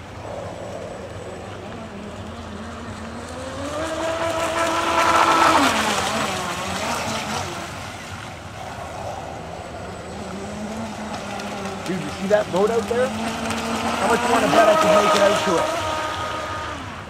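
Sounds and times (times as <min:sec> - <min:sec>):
model boat electric motor whine: 0:00.0 - 0:08.4, 0:09.6 - 0:17.0.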